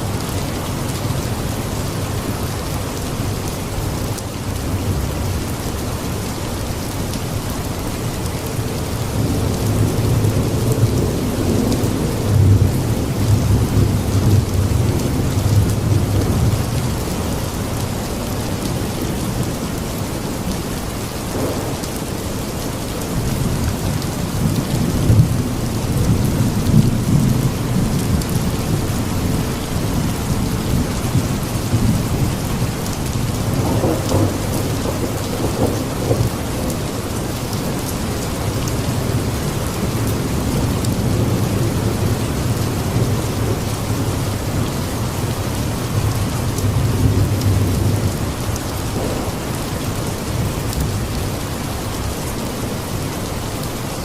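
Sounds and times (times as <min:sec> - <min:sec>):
heavy rain: 0:00.0 - 0:54.0
rolling thunder: 0:24.6 - 0:36.8, 0:45.8 - 0:51.7.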